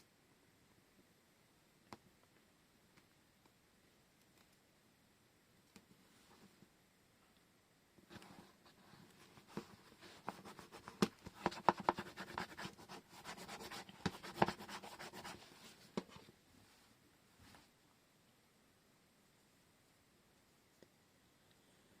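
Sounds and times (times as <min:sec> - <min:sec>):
rubbing and scratching of paper: 0:08.1 - 0:16.3.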